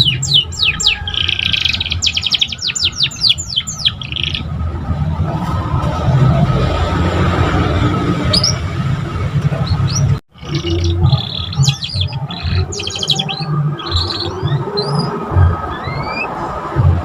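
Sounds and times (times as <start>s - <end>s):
canary chirps and trills: 0.0s - 4.5s, 9.6s - 16.3s.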